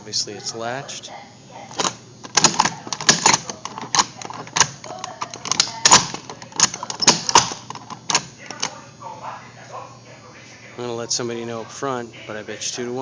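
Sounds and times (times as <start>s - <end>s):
metallic latch clicking: 1.8s - 8.7s.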